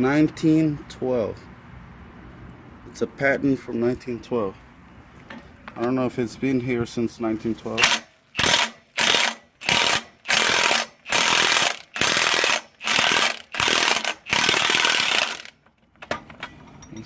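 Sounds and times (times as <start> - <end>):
cordless impact wrench hammering: 7.8 - 16.8.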